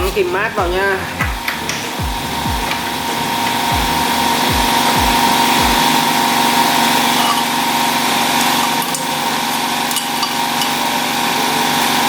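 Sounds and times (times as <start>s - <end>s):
plasma cutter hissing: 0.0s - 12.0s.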